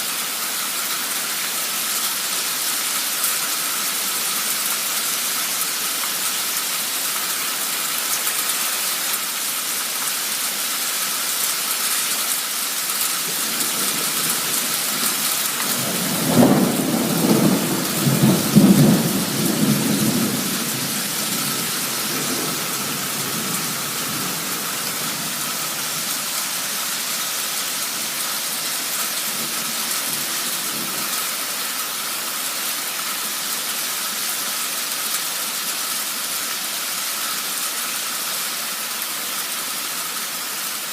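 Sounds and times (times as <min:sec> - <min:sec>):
heavy rain hissing: 0:00.0 - 0:40.9
thunder rumbling: 0:13.2 - 0:26.2.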